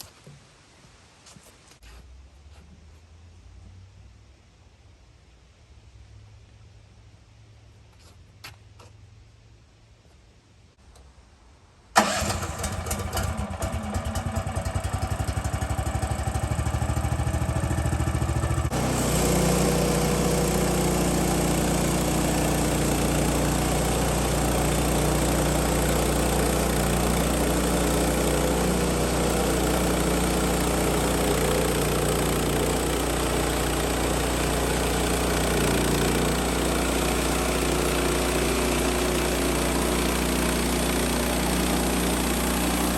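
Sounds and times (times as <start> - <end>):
engine running: 12.0 - 42.9.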